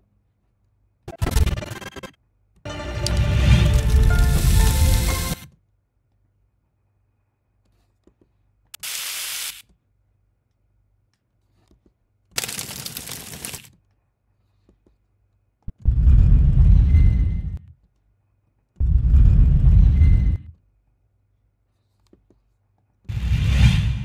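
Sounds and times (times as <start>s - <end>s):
heavy low rumble: 15.8s - 17.6s, 18.8s - 20.5s.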